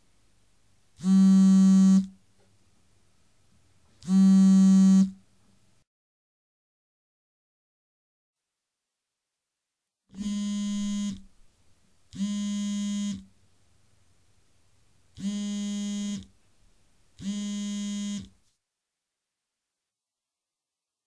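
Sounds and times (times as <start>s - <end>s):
electronic buzzer tone: 1.0s - 2.1s, 4.0s - 5.2s, 10.2s - 11.3s, 12.2s - 13.3s, 15.2s - 16.3s, 17.2s - 18.3s.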